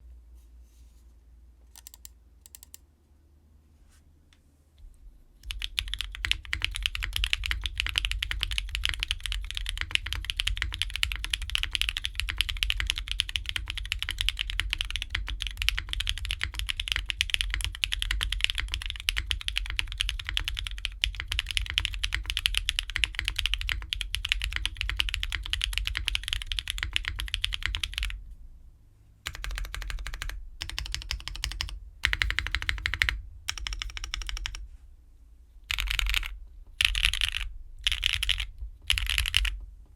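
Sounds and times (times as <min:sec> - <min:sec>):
fast typing on mechanical keyboard: 0:05.4 - 0:28.2, 0:29.3 - 0:34.6, 0:35.7 - 0:39.6.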